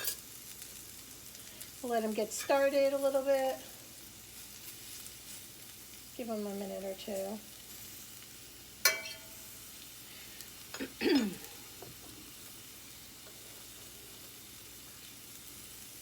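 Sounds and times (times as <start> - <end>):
mushrooms sizzling in frying pan: 0.0 - 16.0
sharp ringing clink: 8.9 - 9.4.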